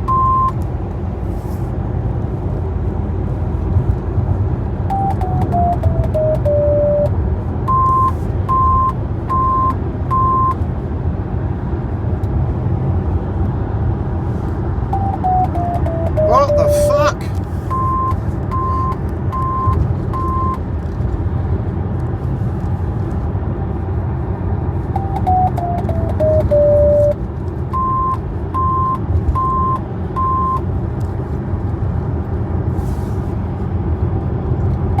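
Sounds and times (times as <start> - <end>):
electronic warning beeps: 0.0 - 0.6, 4.9 - 7.1, 7.7 - 10.6, 14.9 - 17.1, 17.7 - 20.6, 25.0 - 27.2, 27.8 - 30.6
van engine low rumble: 0.0 - 35.0.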